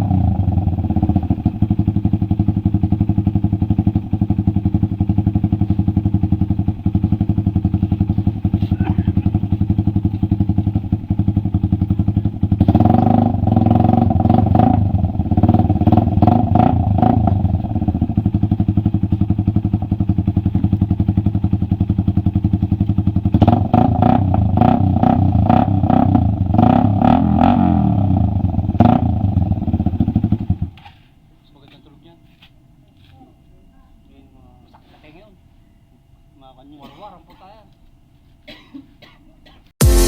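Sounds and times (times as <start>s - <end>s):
motorcycle engine revving: 0.0s - 30.8s
motorcycle engine idling: 0.0s - 31.1s.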